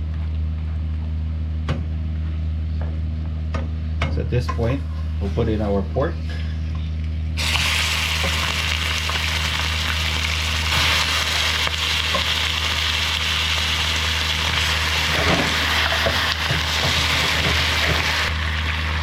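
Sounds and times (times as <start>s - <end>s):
ribs sizzling in hot oil: 7.4s - 19.0s.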